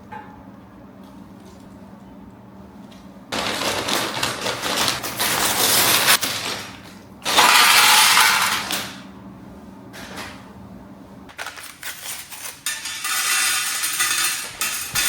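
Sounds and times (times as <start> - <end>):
plastic pieces clattering: 3.3 - 9.0, 11.4 - 15.0.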